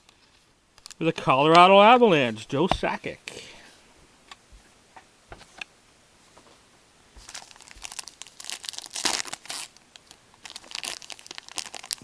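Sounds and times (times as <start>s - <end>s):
card pack wrapper crinkling and tearing: 7.2s - 12.0s.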